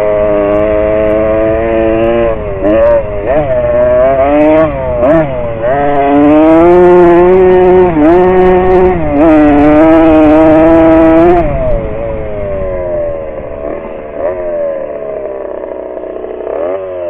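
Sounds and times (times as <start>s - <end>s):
dirt bike engine revving: 0.0s - 17.0s.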